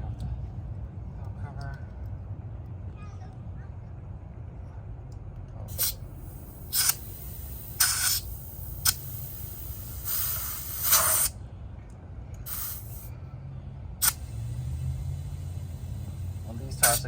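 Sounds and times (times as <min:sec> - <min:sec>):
compressed air hissing: 0:05.7 - 0:11.4, 0:12.4 - 0:13.1, 0:14.0 - 0:17.0.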